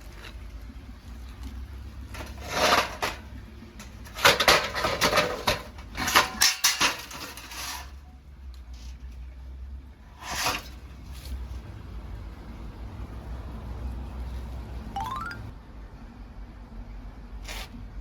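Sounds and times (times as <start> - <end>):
metallic clattering and knocking: 2.1 - 7.5.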